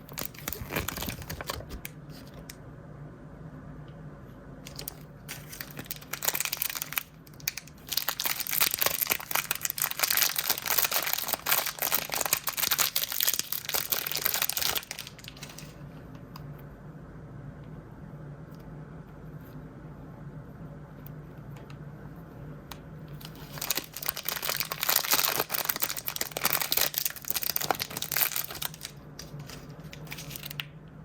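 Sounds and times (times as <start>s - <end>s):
plastic wrapper crinkling and tearing: 0.0s - 2.0s, 4.7s - 15.8s, 23.2s - 30.7s.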